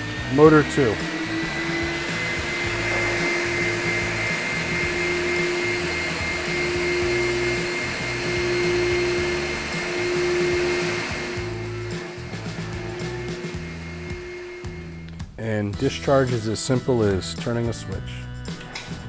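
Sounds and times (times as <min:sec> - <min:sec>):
vacuum motor whine: 0:00.0 - 0:15.2
vacuum airflow rush: 0:00.0 - 0:15.4.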